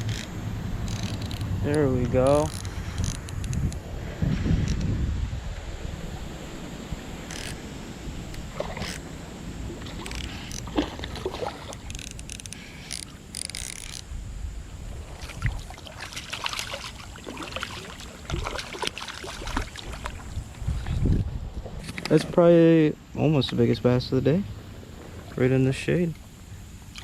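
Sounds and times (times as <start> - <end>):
water sloshing and splashing: 6.0 - 14.1, 14.8 - 22.0, 24.6 - 27.0
clicks and handling noise: 9.9 - 14.1.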